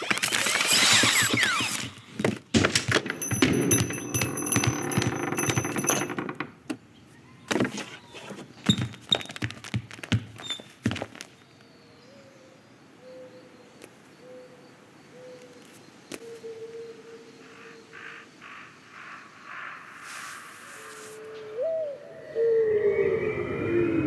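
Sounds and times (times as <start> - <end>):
knocks and thuds: 0.8 - 6.8
jangling clatter with ringing tones: 2.6 - 6.8.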